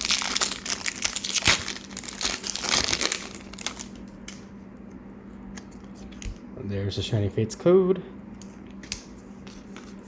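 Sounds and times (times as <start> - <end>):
foil wrapper crinkling: 0.0 - 4.2.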